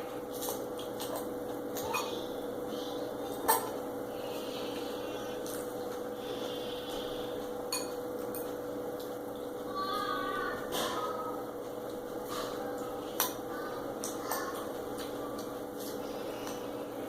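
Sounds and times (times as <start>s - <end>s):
steady hum: 0.0s - 17.0s
utensil clinking against plate: 7.7s - 8.6s.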